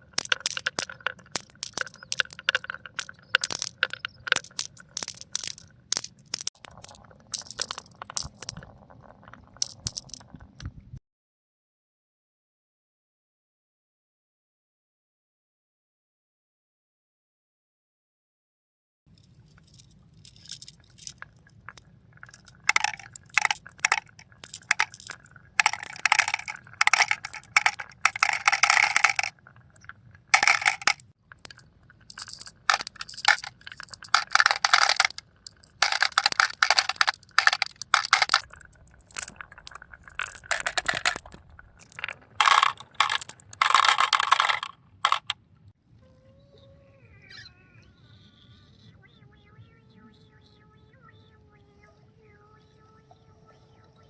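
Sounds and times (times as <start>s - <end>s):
marbles rattling down tracks: 0.0s - 10.5s, 19.4s - 45.4s.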